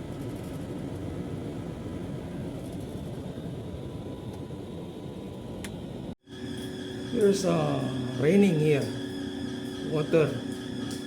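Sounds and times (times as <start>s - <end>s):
air conditioner humming: 4.5s - 11.0s.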